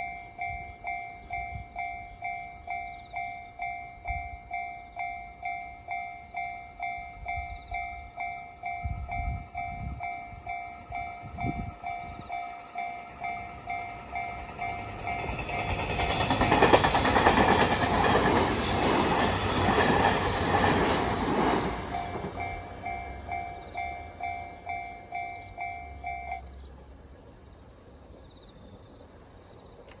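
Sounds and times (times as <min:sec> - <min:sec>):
level-crossing alarm dinging: 0:00.0 - 0:26.5
train passing: 0:04.9 - 0:27.4.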